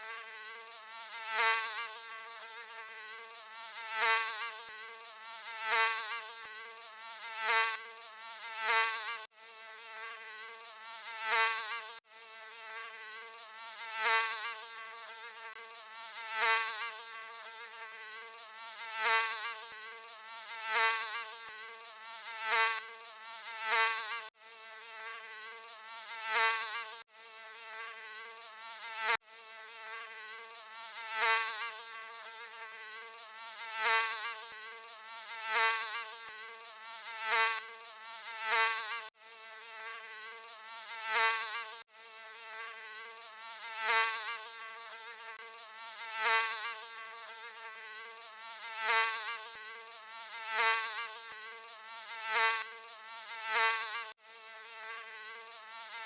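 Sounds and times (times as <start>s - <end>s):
mosquito buzzing whine: 0.0s - 56.0s.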